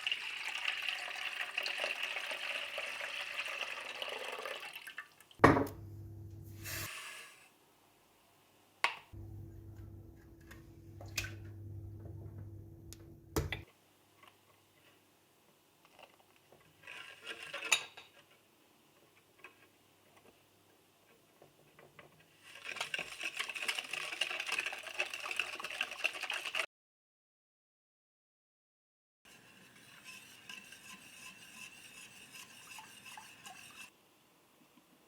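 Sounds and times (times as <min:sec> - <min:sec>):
low appliance hum: 0:05.4 - 0:06.9, 0:09.2 - 0:13.6
utensil clinking and scraping on dish: 0:22.4 - 0:26.6, 0:29.3 - 0:33.9.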